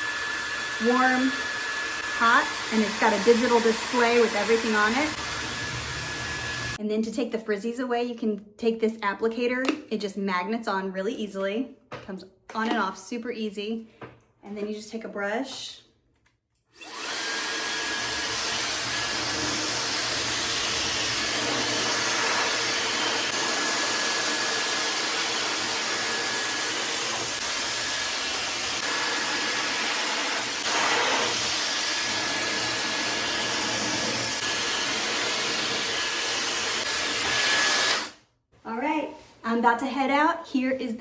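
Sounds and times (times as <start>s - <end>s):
hair dryer running: 0.0s - 6.8s, 16.8s - 38.2s.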